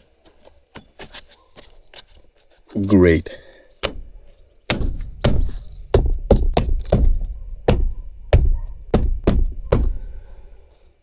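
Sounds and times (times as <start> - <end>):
hands knocking car trim: 4.8 - 10.0.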